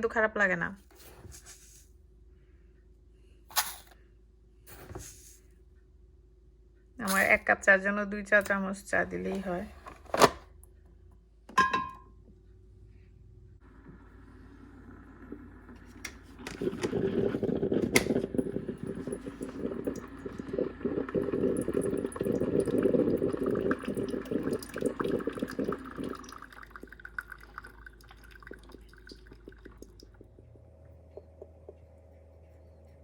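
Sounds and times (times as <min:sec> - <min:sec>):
water pouring into a container: 0:13.8 - 0:30.6.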